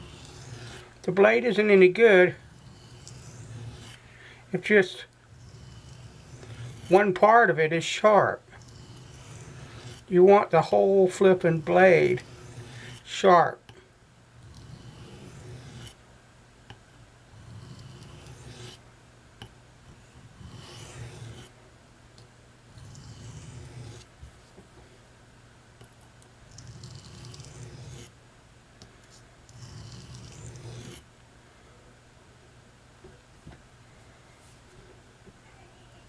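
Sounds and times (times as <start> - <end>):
knife scraping on sharpening stone: 0.0 - 0.8, 2.4 - 4.0, 5.4 - 7.0, 8.6 - 10.0, 11.6 - 13.0, 17.4 - 18.8, 20.4 - 21.5, 26.5 - 28.1, 29.5 - 31.0.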